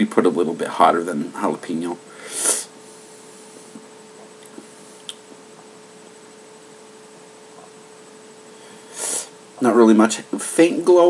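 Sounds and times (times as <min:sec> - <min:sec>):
faint hiss: 0:00.0 - 0:11.0
low hum: 0:00.0 - 0:11.0.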